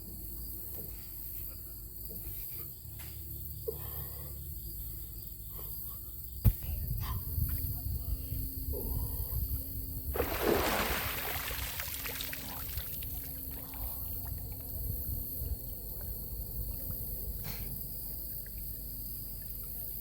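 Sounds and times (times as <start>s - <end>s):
steady low rumble: 6.0s - 19.2s
water splash: 10.1s - 13.3s.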